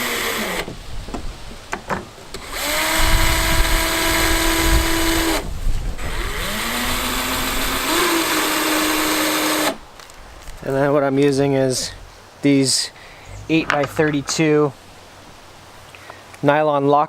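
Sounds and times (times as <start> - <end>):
cordless drill whining: 0.0 - 0.7, 2.4 - 5.4, 6.0 - 9.8.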